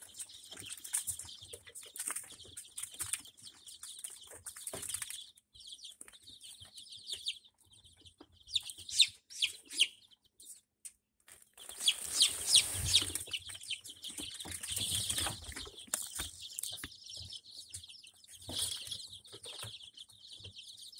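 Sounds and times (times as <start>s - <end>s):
chicks peeping: 0.0s - 20.9s
rustling: 11.2s - 16.4s.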